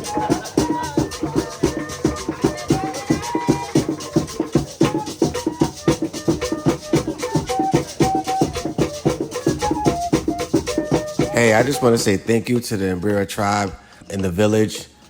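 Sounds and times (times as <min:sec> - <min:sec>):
shaken rattle: 0:00.0 - 0:12.0
short held high notes: 0:00.0 - 0:13.2
drums beating fast rhythm: 0:00.0 - 0:13.8.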